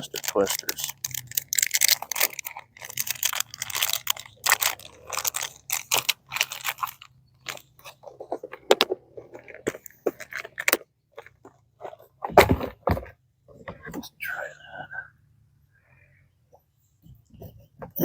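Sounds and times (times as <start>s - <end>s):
plastic package crinkling: 0.0s - 8.0s.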